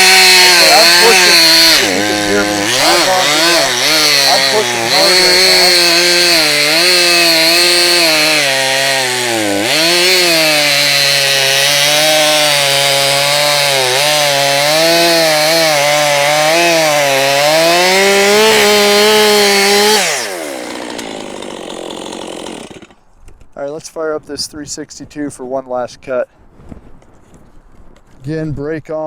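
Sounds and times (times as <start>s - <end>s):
chainsaw cutting wood: 0.0s - 23.1s.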